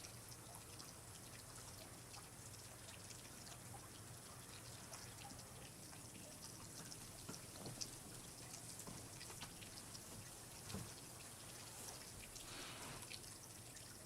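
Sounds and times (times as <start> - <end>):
water dripping: 0.0 - 14.0
hiss of running water: 6.7 - 13.7.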